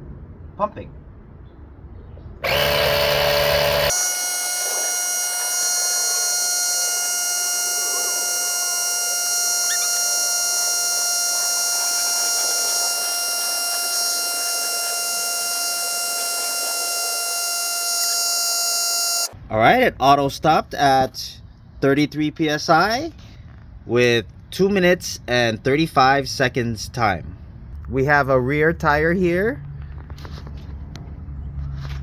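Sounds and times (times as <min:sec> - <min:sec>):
tire inflator compressor whining: 0:02.4 - 0:19.4.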